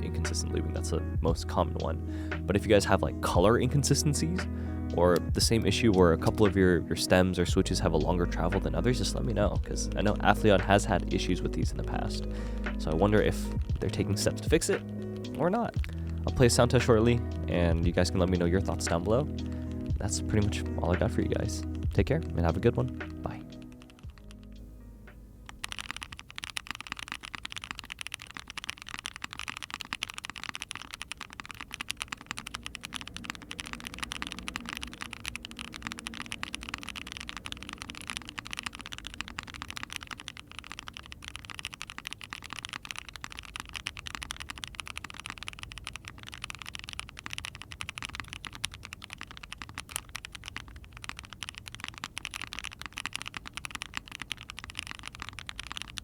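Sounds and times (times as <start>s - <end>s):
fast typing on mechanical keyboard: 0.0s - 0.4s, 7.8s - 19.2s, 22.4s - 24.3s, 25.5s - 56.0s.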